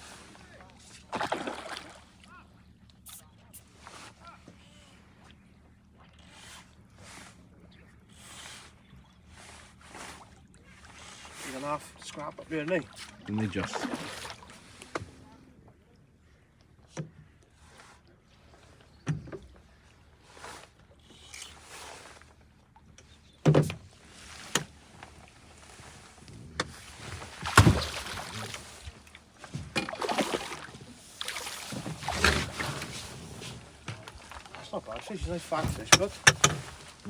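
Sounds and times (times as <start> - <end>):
water splashing: 1.1 - 2.0, 13.0 - 14.8, 26.9 - 37.0
knocks against a boat: 19.0 - 19.6, 23.4 - 23.8, 26.6 - 28.9, 29.5 - 30.0, 35.1 - 37.0.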